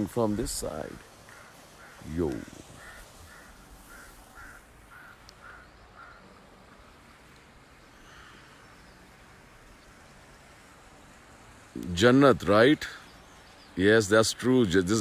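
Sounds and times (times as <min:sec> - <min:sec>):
faint outdoor background: 0:00.0 - 0:15.0
crow cawing: 0:01.2 - 0:06.4, 0:08.0 - 0:08.6.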